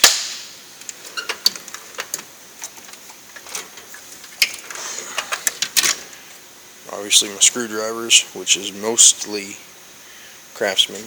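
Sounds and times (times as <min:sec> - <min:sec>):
metal drawers opening and shutting: 0:00.8 - 0:06.2
tools clattering: 0:00.8 - 0:06.2.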